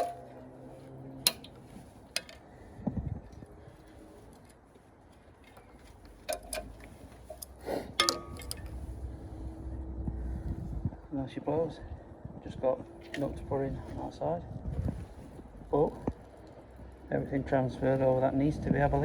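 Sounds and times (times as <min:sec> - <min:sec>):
metallic tool clicks and taps: 0:01.3 - 0:01.6, 0:02.2 - 0:02.4, 0:06.3 - 0:08.7.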